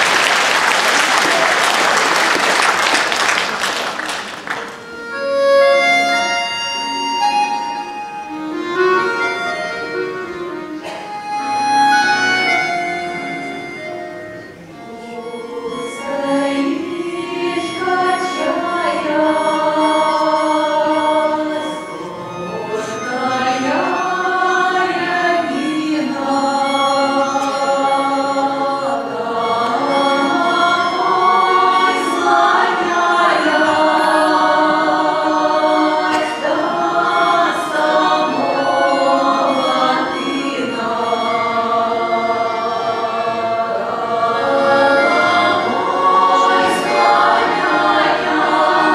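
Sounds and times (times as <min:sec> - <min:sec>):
women singing in harmony: 0:14.8 - 0:48.9.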